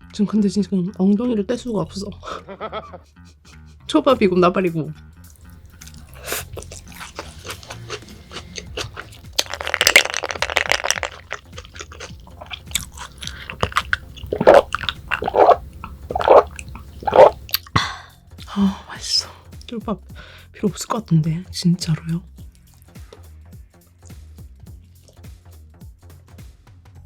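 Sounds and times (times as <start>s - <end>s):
crunchy chewing: 5.3s - 17.8s, 24.9s - 25.3s
close chewing with wet clicks: 5.3s - 18.8s, 25.0s - 25.3s.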